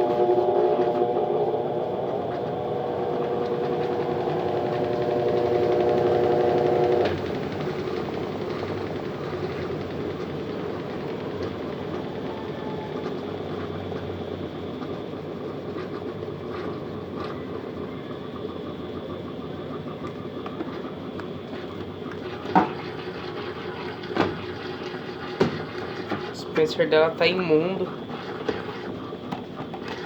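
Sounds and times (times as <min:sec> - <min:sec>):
washing machine humming: 0:00.0 - 0:30.0.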